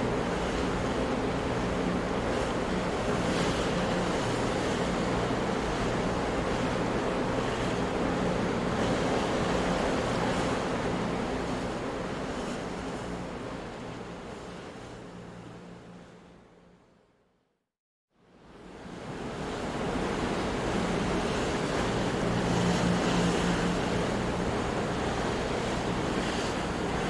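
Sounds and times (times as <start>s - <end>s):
ocean waves breaking: 18.8s - 27.0s.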